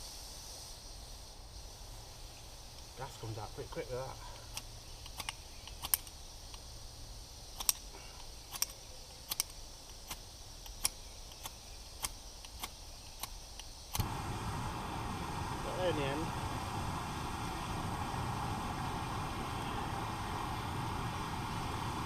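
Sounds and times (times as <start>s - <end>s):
gas stove igniter clicking: 7.5s - 7.9s, 8.5s - 22.0s.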